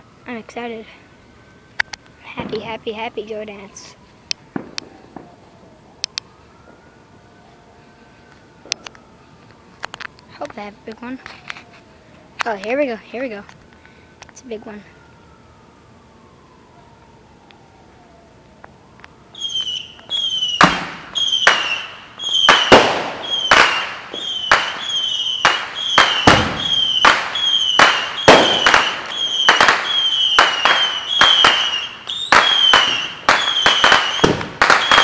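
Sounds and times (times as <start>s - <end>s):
firework bangs with whistles: 4.5s - 5.4s, 19.4s - 35.0s.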